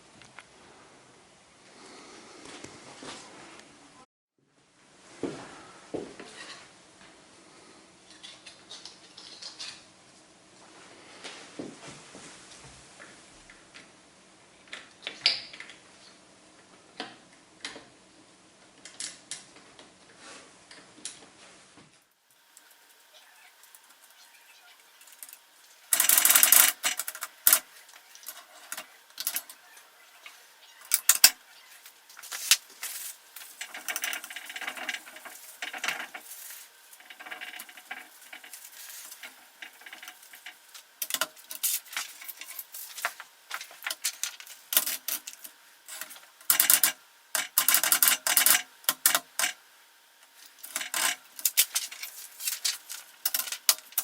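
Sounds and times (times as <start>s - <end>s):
typewriter clicking and clattering: 25.9s - 29.5s, 33.6s - 49.6s, 50.5s - 54.0s.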